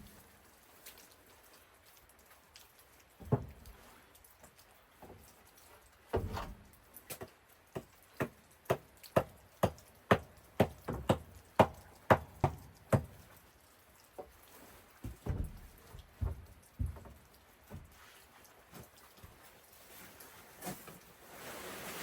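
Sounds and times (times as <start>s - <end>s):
sharp knocks: 15.0s - 17.2s.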